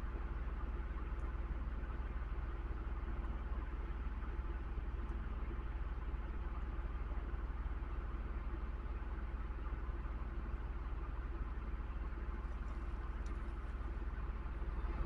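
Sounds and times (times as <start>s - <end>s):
steady low hum: 11.4s - 15.0s.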